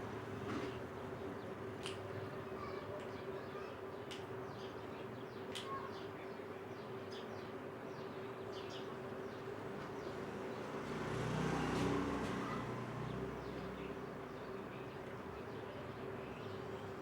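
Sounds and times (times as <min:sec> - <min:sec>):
motor vehicle passing: 0:09.9 - 0:14.3
small birds chirping: 0:12.4 - 0:17.0.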